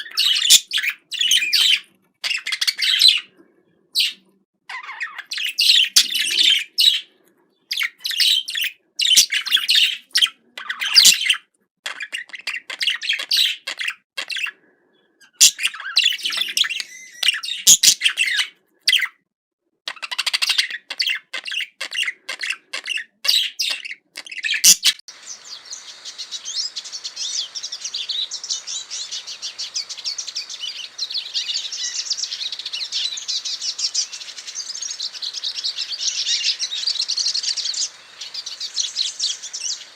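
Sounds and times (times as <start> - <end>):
small birds chirping and twittering: 0.0 - 19.3, 19.9 - 39.9.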